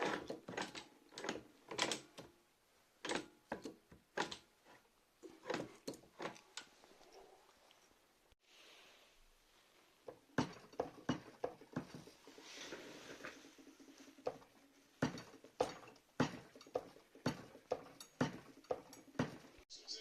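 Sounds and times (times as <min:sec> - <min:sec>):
metal clicks and knocks: 0:03.0 - 0:04.5, 0:10.0 - 0:12.1, 0:14.2 - 0:19.6.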